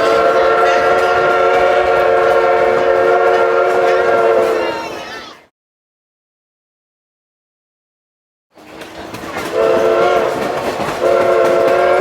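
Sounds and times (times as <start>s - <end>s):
steam locomotive whistle blast: 0.0s - 5.0s, 9.4s - 12.0s
faint rail clatter: 8.6s - 12.0s.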